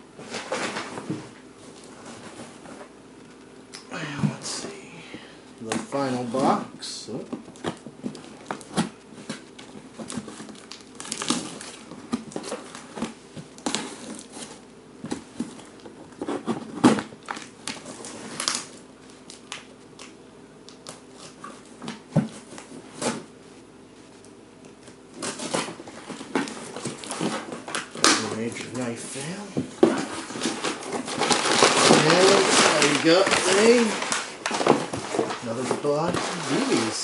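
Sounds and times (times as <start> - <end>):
cardboard and plastic crinkling: 0.1 - 3.4, 4.0 - 23.4, 24.0 - 37.0
packing tape tearing: 7.6 - 14.6, 16.2 - 21.6, 25.2 - 37.0.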